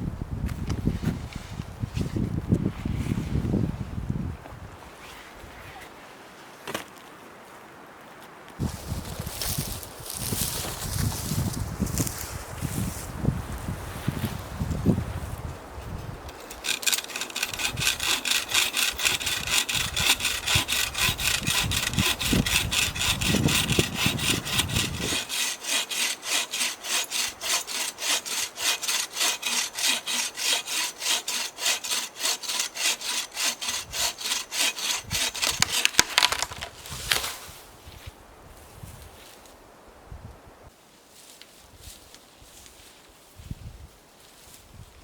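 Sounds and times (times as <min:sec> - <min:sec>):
hand saw cutting wood: 0:16.2 - 0:37.4.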